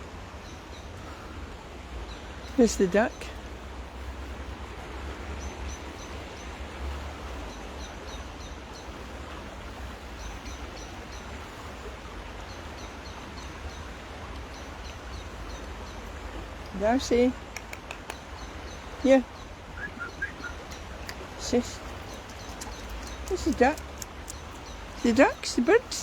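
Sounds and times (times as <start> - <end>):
rain falling on river: 0.0 - 26.0
small bird chirping: 19.8 - 26.0.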